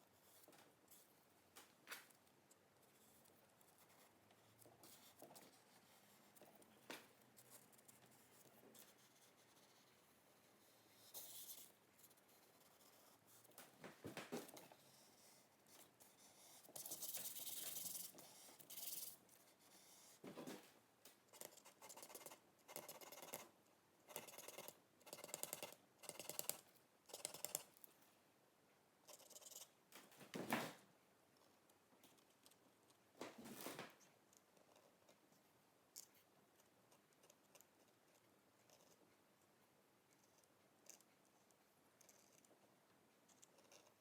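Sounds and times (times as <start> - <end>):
paintbrush scratching on board: 16.1 - 20.2.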